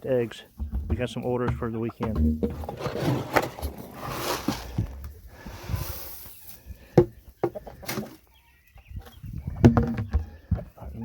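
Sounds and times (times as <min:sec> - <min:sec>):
poultry clucking: 0:00.2 - 0:11.0
sharp knocks: 0:00.6 - 0:02.8.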